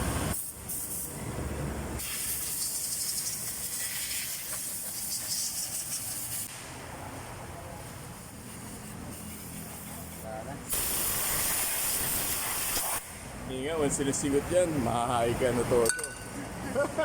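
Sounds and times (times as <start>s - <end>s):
pressurised spray hissing: 2.0s - 6.5s, 10.7s - 13.1s.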